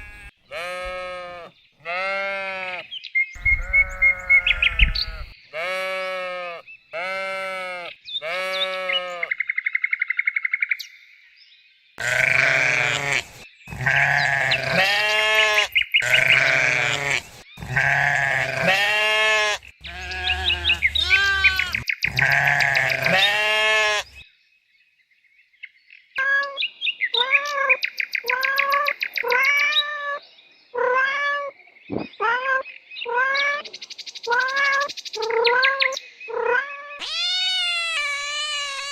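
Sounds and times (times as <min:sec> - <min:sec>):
bleating calls: 0:00.0 - 0:09.4, 0:12.0 - 0:24.2, 0:34.3 - 0:38.9.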